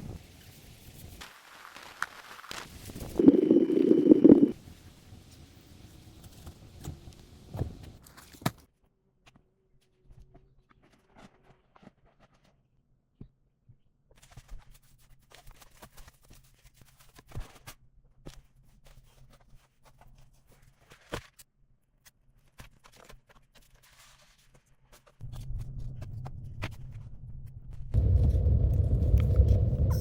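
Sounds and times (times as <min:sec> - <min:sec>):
low steady hum: 0:25.2 - 0:30.0.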